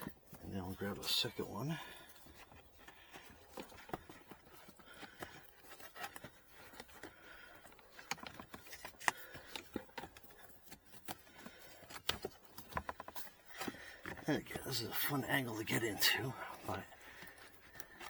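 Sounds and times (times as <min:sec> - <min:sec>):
plastic clicks and rustling: 0:02.2 - 0:14.3.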